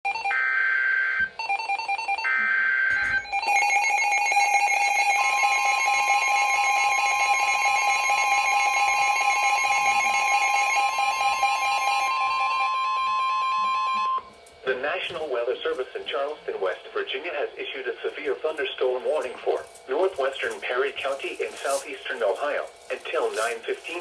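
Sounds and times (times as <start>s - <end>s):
pulsing electronic alarm: 0.1s - 14.4s
steady warning alarm tone: 0.1s - 24.0s.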